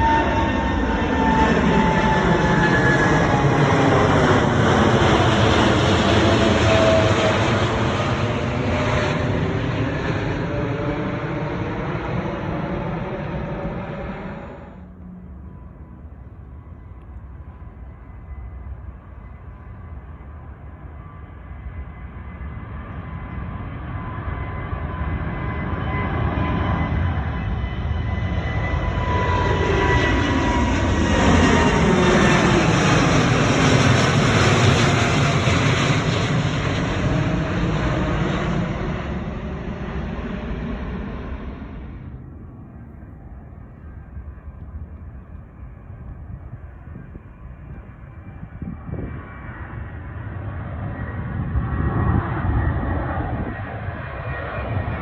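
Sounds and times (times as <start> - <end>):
jet engines roaring on takeoff: 0.0 - 55.0.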